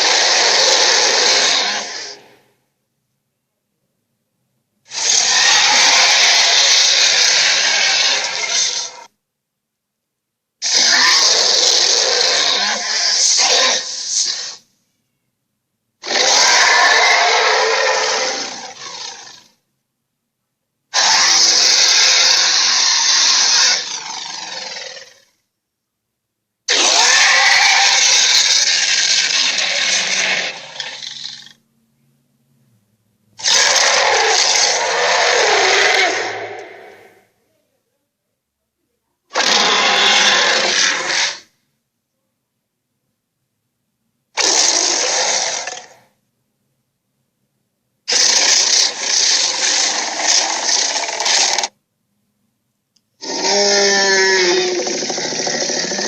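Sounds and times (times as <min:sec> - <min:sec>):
dragon roar: 0:00.0 - 0:02.4, 0:04.9 - 0:09.1, 0:10.6 - 0:14.6, 0:16.0 - 0:19.6, 0:21.0 - 0:25.3, 0:26.7 - 0:31.6, 0:33.4 - 0:37.2, 0:39.3 - 0:41.5, 0:44.4 - 0:46.1, 0:48.1 - 0:51.7, 0:53.2 - 0:56.0.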